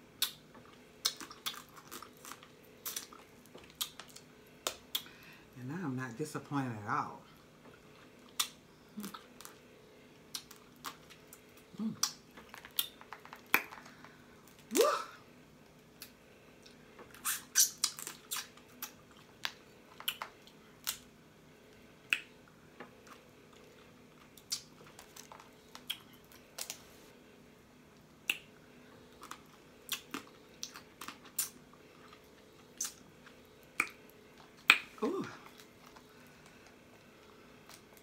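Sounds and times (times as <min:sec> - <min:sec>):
lip smacking and chewing: 0:00.2 - 0:05.2, 0:07.6 - 0:09.6, 0:10.2 - 0:13.9, 0:16.0 - 0:21.1, 0:22.0 - 0:26.8, 0:28.2 - 0:38.0.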